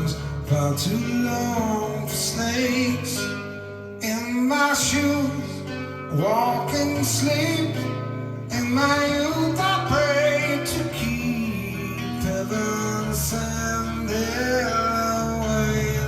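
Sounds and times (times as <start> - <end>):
person singing: 0.0 - 3.4, 4.0 - 16.0
acoustic guitar: 0.0 - 16.0.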